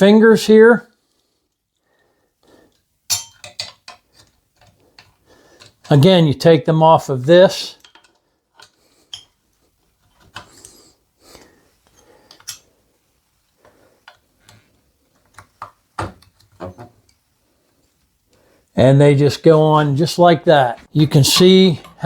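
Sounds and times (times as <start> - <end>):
metal parts clicking and clinking: 3.1 - 6.0, 7.8 - 9.4.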